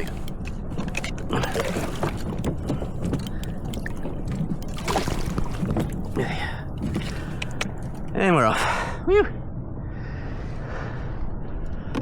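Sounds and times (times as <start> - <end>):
water splashing against kayak: 0.0 - 8.3.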